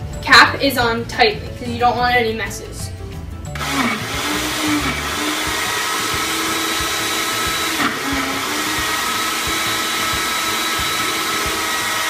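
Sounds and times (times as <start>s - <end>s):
blender running: 3.5s - 12.0s.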